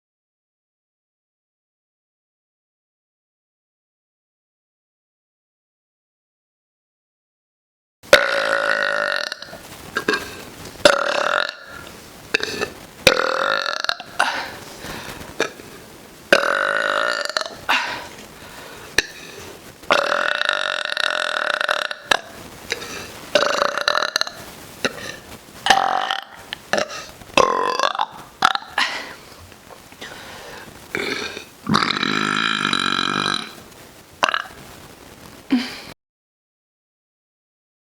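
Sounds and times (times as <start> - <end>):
woman burping: 8.1 - 10.3, 10.9 - 14.6, 15.4 - 15.6, 16.4 - 18.2, 19.9 - 29.2, 30.9 - 33.6, 35.5 - 36.0.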